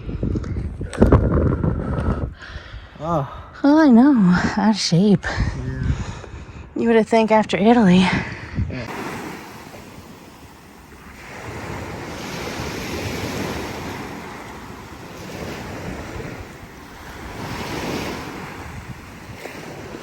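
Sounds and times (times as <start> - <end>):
wind gusts on microphone: 0.0 - 20.0.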